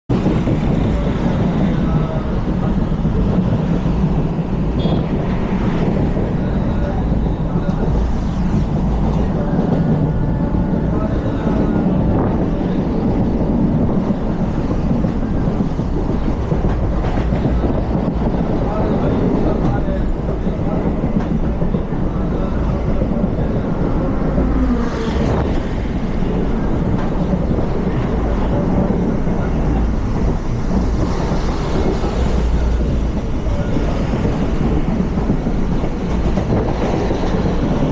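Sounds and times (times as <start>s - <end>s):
train rumbling on track: 0.1s - 37.9s.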